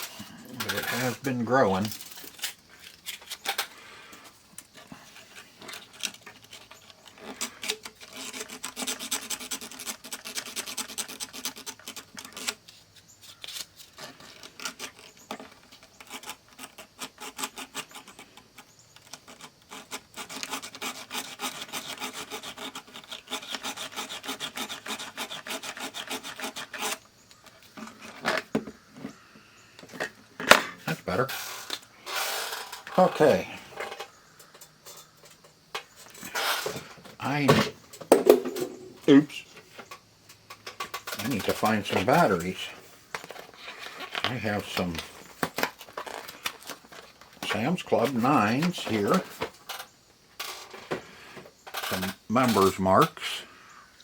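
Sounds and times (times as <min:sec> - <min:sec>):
scraping on a battery contact: 0:00.0 - 0:52.8.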